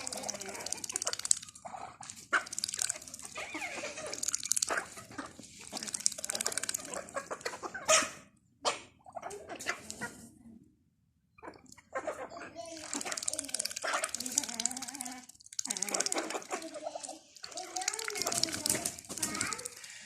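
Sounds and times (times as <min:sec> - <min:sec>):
sharp water splashes: 0:00.0 - 0:07.5, 0:12.6 - 0:20.0
ducks dabbling in water: 0:00.0 - 0:10.6, 0:11.4 - 0:20.0.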